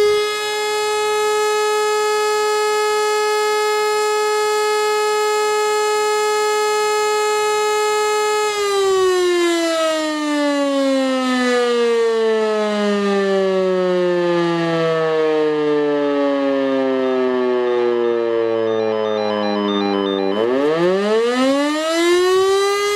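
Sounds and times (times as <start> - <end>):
motor siren winding down: 14.4 - 22.9.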